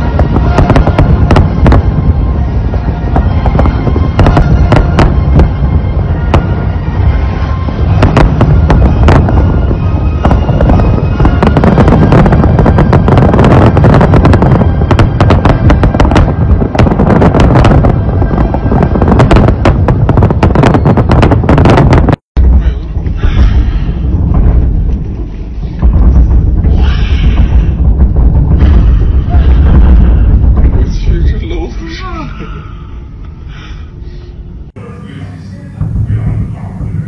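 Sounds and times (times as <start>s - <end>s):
music: 0.0s - 31.8s, 33.0s - 37.0s
firework bangs and crackles: 0.0s - 32.0s
low rumble of explosions: 0.0s - 37.0s.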